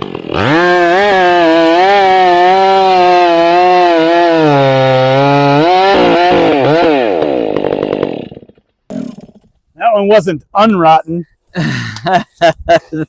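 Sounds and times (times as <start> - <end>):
chainsaw cutting log: 0.0 - 9.5.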